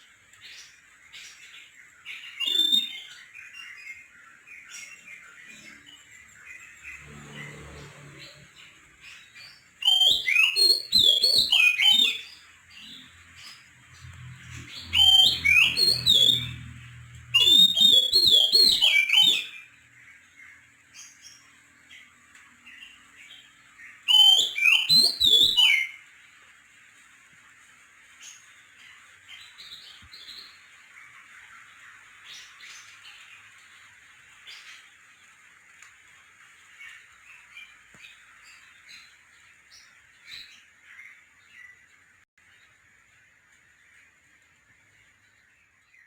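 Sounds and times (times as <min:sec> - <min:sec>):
bird singing whistled phrases: 0:02.1 - 0:04.0, 0:09.8 - 0:13.0, 0:14.8 - 0:19.7, 0:24.0 - 0:26.0.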